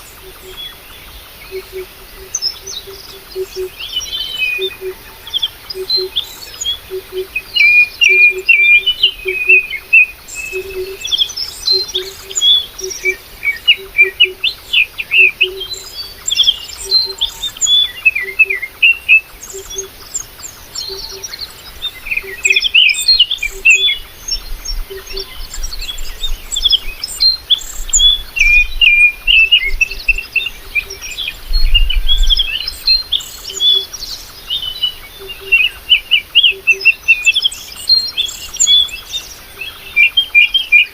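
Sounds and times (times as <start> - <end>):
small birds chirping: 0.0 - 40.9.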